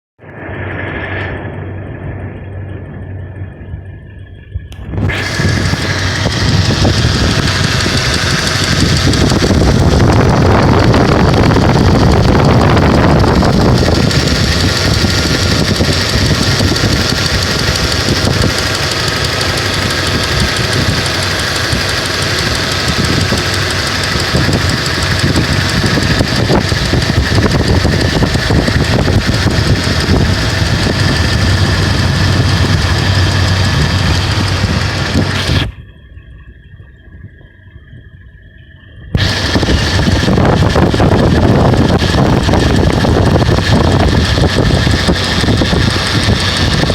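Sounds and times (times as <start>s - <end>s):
engine running with knocking: 0.2s - 37.6s, 39.0s - 46.9s.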